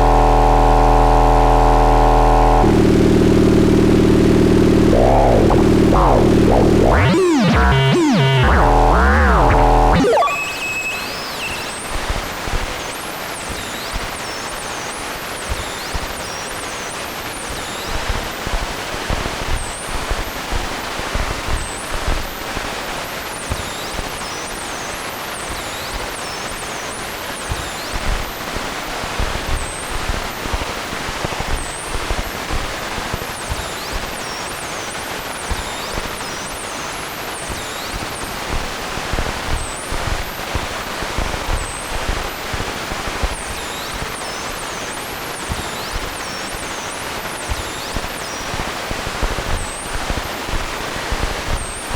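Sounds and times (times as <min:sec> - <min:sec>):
soft low thumps: 0:00.0 - 0:10.0
high chirping glides: 0:00.0 - 0:11.8
synthesizer rushing noise: 0:00.0 - 0:11.8.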